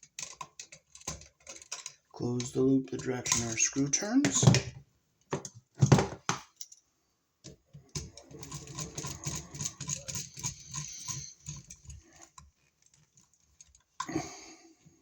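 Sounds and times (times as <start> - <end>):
screwdriver clicking and scraping: 7.9 - 14.1.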